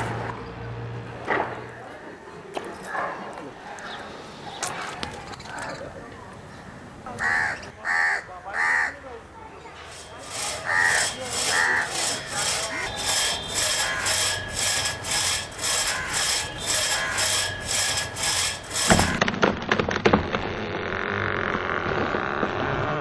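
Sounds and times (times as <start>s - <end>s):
saw cutting through wood: 7.1s - 7.7s, 9.7s - 19.3s.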